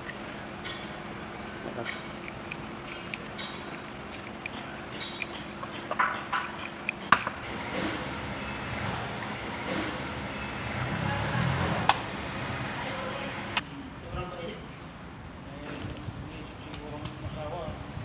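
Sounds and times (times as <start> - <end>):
steady background hum: 0.0 - 18.0
metal tools clinking: 1.8 - 6.9.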